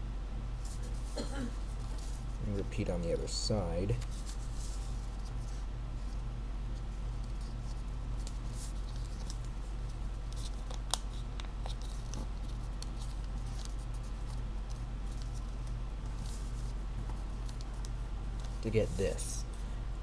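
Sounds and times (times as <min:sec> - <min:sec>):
low electrical hum: 0:00.0 - 0:20.0
paper being folded and creased: 0:07.2 - 0:19.0.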